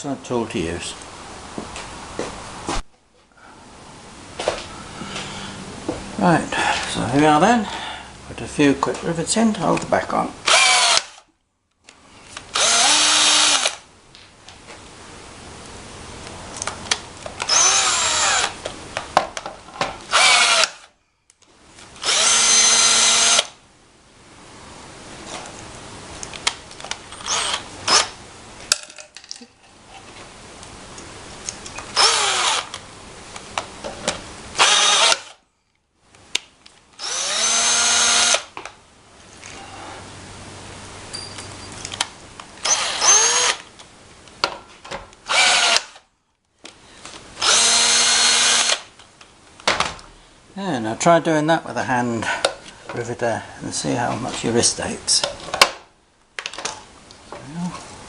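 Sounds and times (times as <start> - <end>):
cordless drill motor whine: 10.5 - 11.2, 12.5 - 13.8, 17.5 - 18.6, 20.1 - 20.9, 22.0 - 23.5, 27.2 - 28.1, 32.0 - 32.8, 34.6 - 35.4, 37.0 - 38.5, 42.6 - 43.6, 45.3 - 46.0, 47.4 - 48.9.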